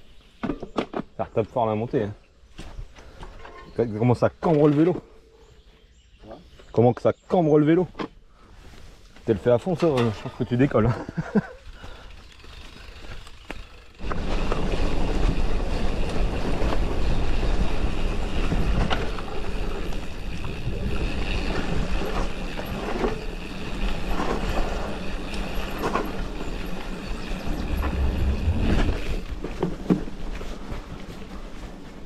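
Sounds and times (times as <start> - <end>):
bike knocking and rattling: 9.7 - 32.0
bike tyre rumble: 10.5 - 32.0
wind rushing over microphone: 26.2 - 29.4.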